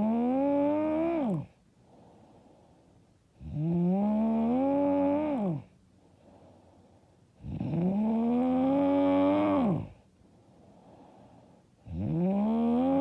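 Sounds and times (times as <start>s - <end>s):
woman snoring loudly: 0.0s - 1.5s, 3.4s - 5.7s, 7.4s - 10.0s, 11.8s - 13.0s.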